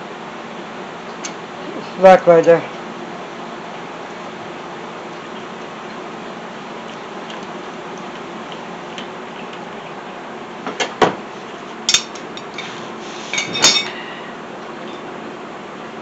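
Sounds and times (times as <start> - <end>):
steady shop hiss: 11.3 - 15.0
metal tools clinking: 13.4 - 14.0.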